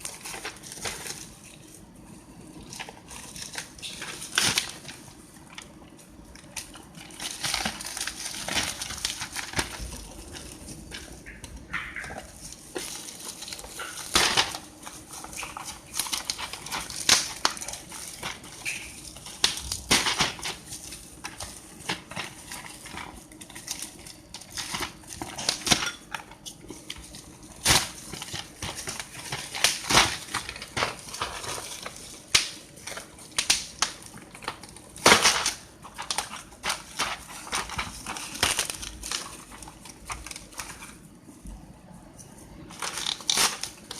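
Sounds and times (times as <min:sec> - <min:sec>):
packaging crinkling: 0:00.0 - 0:43.9.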